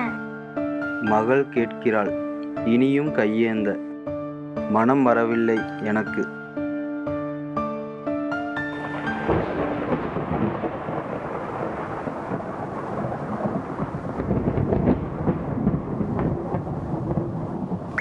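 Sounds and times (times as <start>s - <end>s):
rain: 8.6s - 18.0s
rumbling thunder: 8.6s - 18.0s.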